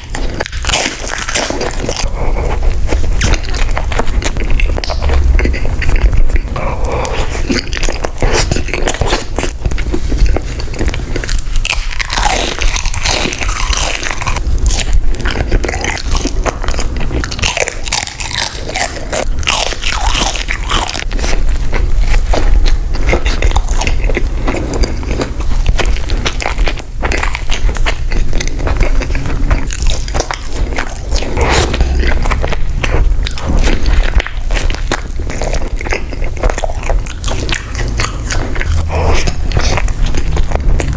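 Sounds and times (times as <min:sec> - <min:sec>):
crunchy bites and chewing: 0:00.0 - 0:40.9
low steady hum: 0:00.0 - 0:40.9.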